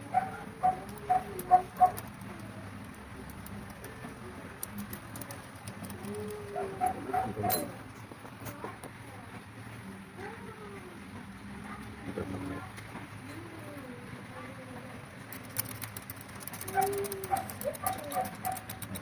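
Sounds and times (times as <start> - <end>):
faint clicks: 0.1 - 7.6, 12.7 - 19.0.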